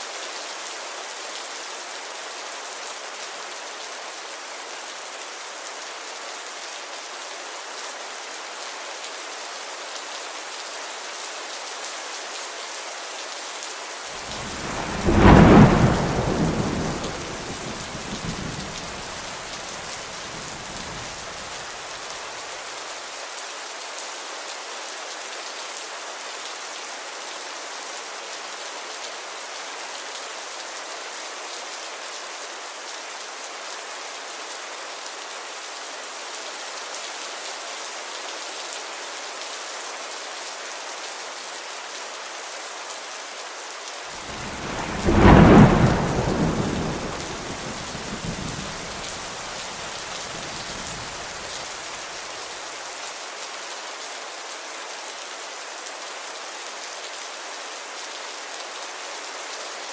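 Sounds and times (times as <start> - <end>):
rainfall hiss: 0.0 - 59.9
thunderclap rumbling: 14.2 - 21.4, 44.2 - 51.7.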